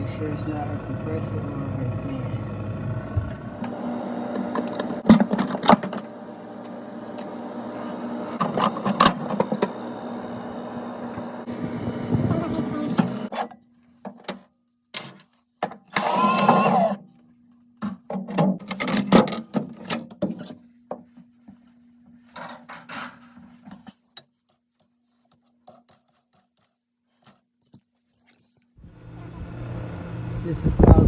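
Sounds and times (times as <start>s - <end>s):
power drill whirring: 0.0s - 13.3s, 15.9s - 17.0s.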